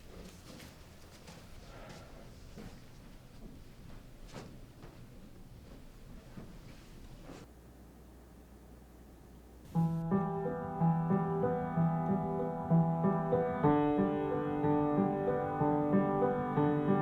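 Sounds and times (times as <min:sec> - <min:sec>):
piano music: 0:09.7 - 0:17.0.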